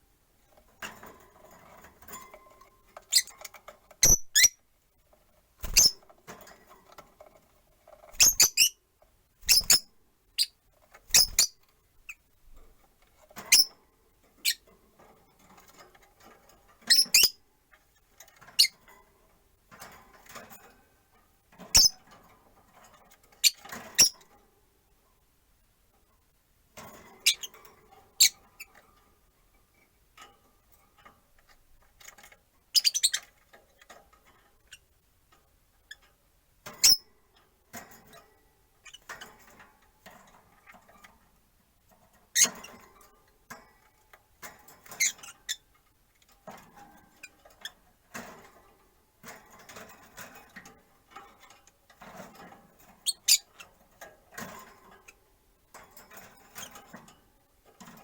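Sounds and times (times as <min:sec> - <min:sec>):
lovebirds chirping: 0:04.0 - 0:04.6, 0:08.2 - 0:08.8.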